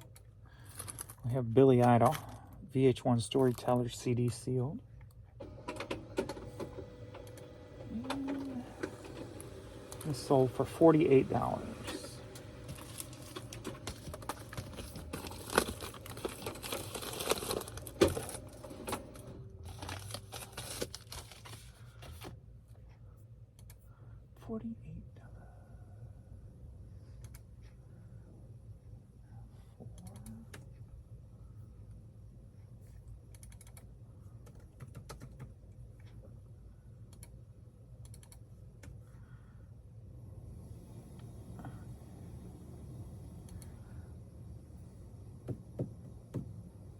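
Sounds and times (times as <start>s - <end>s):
low steady hum: 0.0s - 34.8s, 35.5s - 46.9s
packaging crinkling and rustling: 11.4s - 22.3s
typing on computer keyboard: 33.3s - 35.6s.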